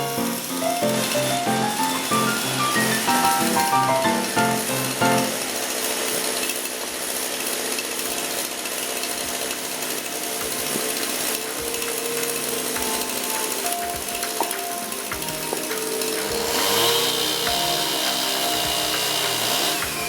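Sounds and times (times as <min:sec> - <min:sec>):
power saw cutting log: 0:00.0 - 0:11.6, 0:15.6 - 0:20.0.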